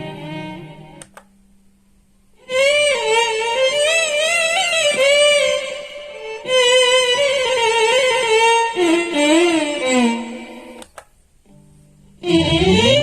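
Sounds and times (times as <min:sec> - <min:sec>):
violin melody with vibrato: 0:00.0 - 0:01.0, 0:02.4 - 0:10.8, 0:12.2 - 0:13.0.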